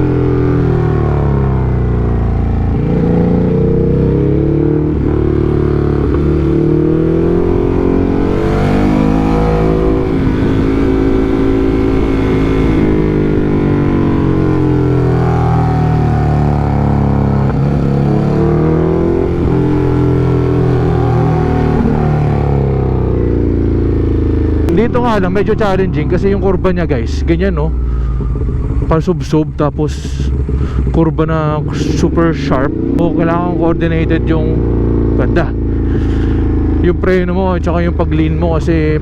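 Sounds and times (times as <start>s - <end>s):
motorcycle engine revving: 0.0s - 39.0s
wind rushing: 2.4s - 24.2s.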